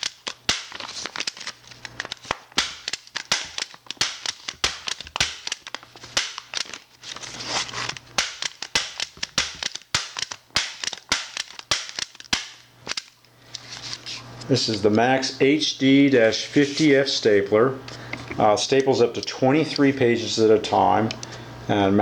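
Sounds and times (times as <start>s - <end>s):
paper rustling: 0.0s - 14.9s
stapler snapping clacks: 2.2s - 6.8s, 8.2s - 13.1s.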